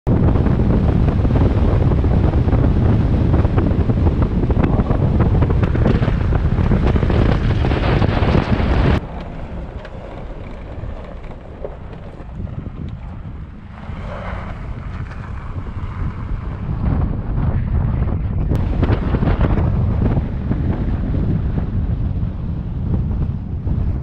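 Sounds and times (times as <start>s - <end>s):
quieter wind noise: 0.0s - 24.0s
wind buffeting microphone: 0.0s - 24.0s.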